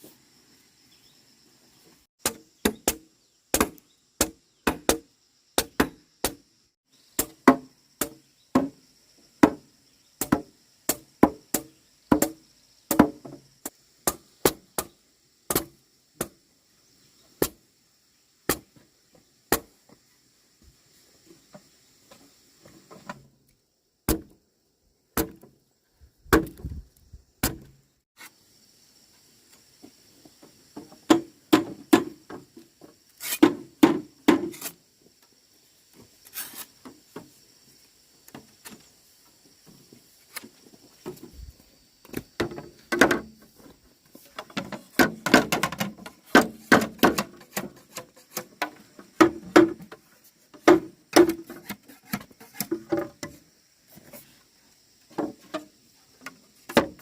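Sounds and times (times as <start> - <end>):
wood knocks and thuds: 7.2 - 8.8, 9.4 - 13.5, 26.2 - 26.8, 27.4 - 27.8, 30.7 - 34.6, 41.0 - 53.4, 55.1 - 57.0.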